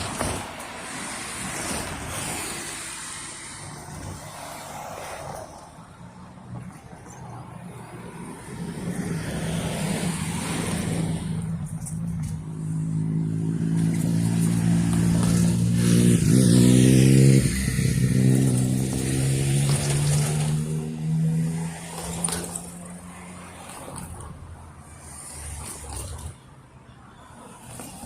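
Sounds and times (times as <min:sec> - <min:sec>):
motor vehicle passing by: 0:07.6 - 0:24.2.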